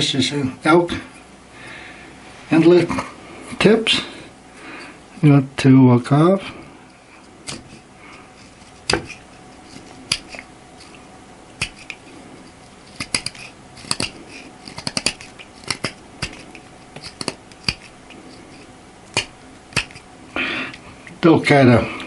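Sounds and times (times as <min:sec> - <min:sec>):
knife whittling antler: 0:08.4 - 0:11.0, 0:11.6 - 0:20.1.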